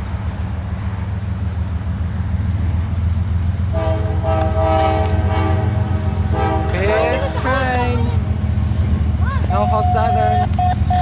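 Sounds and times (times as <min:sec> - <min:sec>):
train rumbling: 0:00.0 - 0:11.0
train air horn chord: 0:03.7 - 0:07.1.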